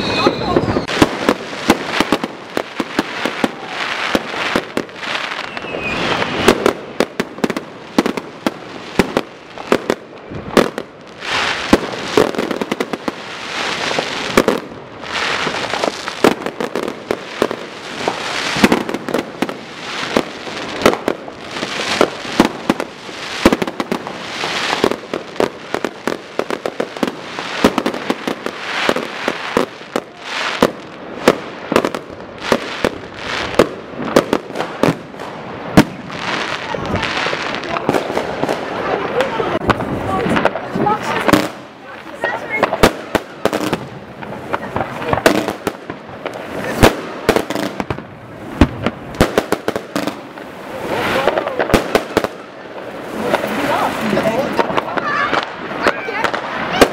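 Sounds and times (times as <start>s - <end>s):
firecracker bangs: 0.0s - 41.7s
fireworks crackling: 0.0s - 56.9s.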